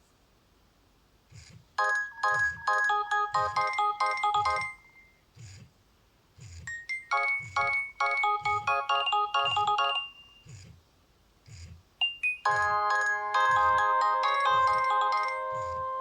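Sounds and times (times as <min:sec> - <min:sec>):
synthesised phone ringtone melody: 0:01.8 - 0:05.0, 0:07.0 - 0:10.3, 0:12.4 - 0:16.0.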